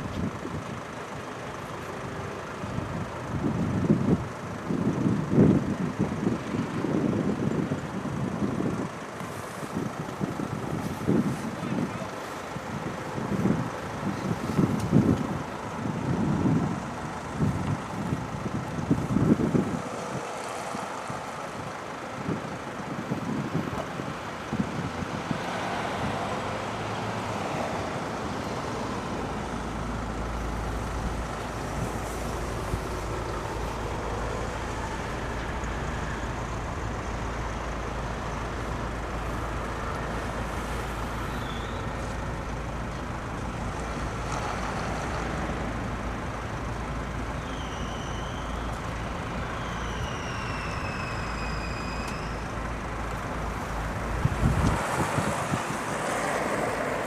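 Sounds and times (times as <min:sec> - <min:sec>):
diesel train engine drone: 0:00.0 - 0:57.0
low rumbles: 0:28.0 - 0:47.4, 0:48.6 - 0:56.1.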